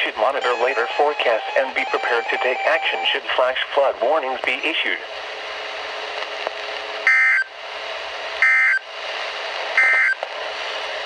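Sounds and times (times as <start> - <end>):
radio receiver hiss: 0.0 - 6.9
warbling data bursts: 0.4 - 3.2.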